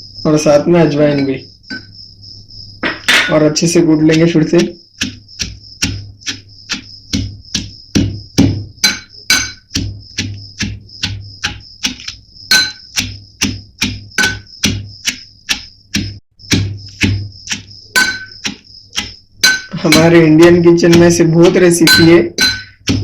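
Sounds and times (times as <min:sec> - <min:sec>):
pestle pounding in a mortar: 0:02.8 - 0:23.0.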